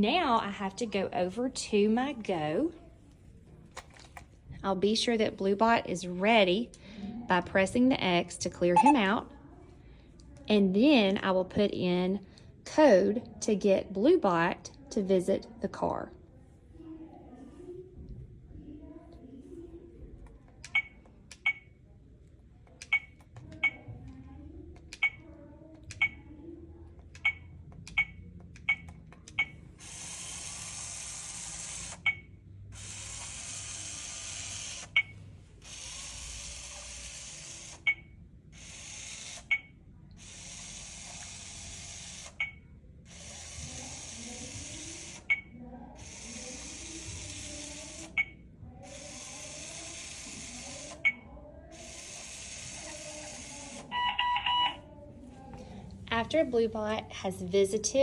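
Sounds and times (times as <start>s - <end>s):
button click with beep: 8.8s - 9.0s
robot beeps: 8.8s - 9.1s, 53.9s - 54.8s
small gear motors whirring: 32.8s - 35.0s, 35.6s - 37.9s, 40.2s - 42.4s, 43.1s - 45.2s, 51.8s - 53.9s.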